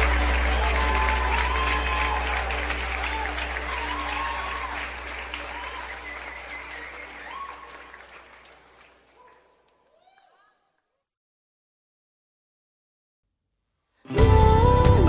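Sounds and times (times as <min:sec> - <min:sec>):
sustained low bass note: 0:00.0 - 0:05.4
live worship song: 0:00.0 - 0:07.3, 0:14.1 - 0:15.0
audience applause: 0:00.0 - 0:09.8.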